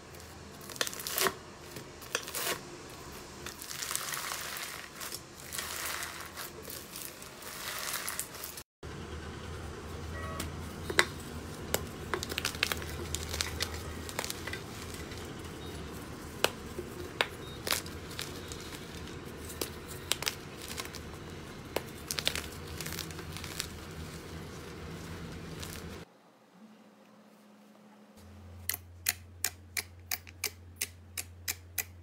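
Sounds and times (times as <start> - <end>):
sticky slime rustle: 0.2 - 8.6, 11.2 - 26.0
slime crackling and popping: 3.4 - 8.6, 11.7 - 15.4, 16.4 - 26.0.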